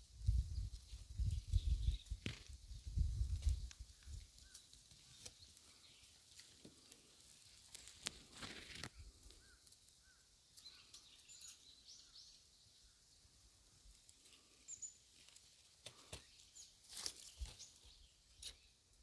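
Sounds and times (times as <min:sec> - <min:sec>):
high bird chirps: 0:09.4 - 0:12.4.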